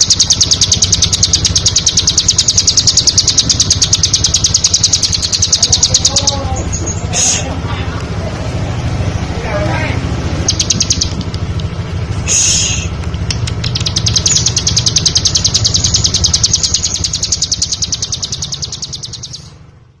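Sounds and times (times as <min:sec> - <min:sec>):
bird singing rapid high trill: 0:00.0 - 0:07.4, 0:10.3 - 0:11.3, 0:13.6 - 0:19.8
steady low hum: 0:00.0 - 0:20.0.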